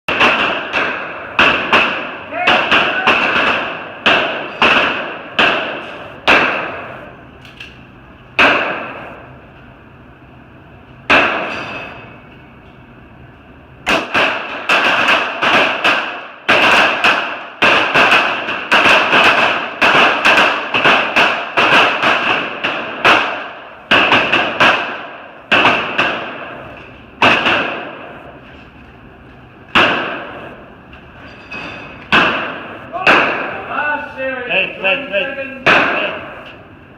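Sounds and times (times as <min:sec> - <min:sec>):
pistol shots with echo: 0:00.1 - 0:07.1, 0:08.4 - 0:09.2, 0:11.1 - 0:12.0, 0:13.8 - 0:28.2, 0:29.7 - 0:30.6, 0:32.1 - 0:33.7, 0:35.6 - 0:36.4.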